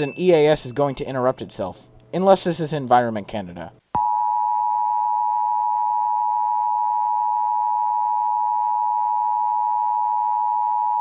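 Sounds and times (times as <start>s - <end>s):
voice message: 0.0s - 3.7s.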